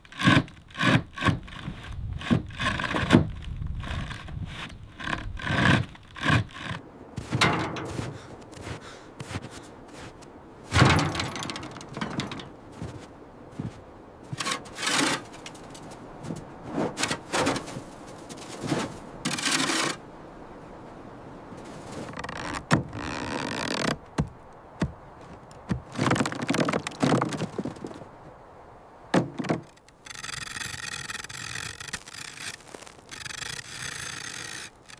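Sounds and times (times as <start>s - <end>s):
scraping and rubbing on wood: 0.1s - 9.4s, 10.7s - 13.0s, 13.6s - 20.0s, 29.2s - 34.9s
wooden thunks and knocks: 7.2s - 8.3s, 10.7s - 15.6s, 16.2s - 17.8s, 22.1s - 28.0s, 29.1s - 29.8s.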